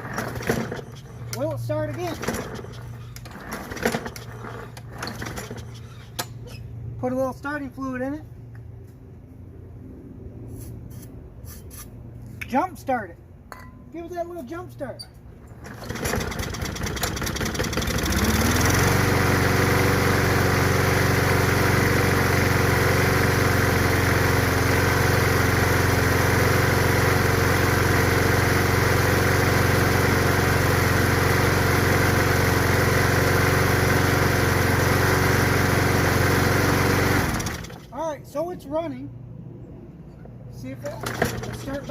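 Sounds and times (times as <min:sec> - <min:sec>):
mower engine starting and running: 0:00.0 - 0:07.1, 0:15.4 - 0:38.0, 0:40.8 - 0:41.9.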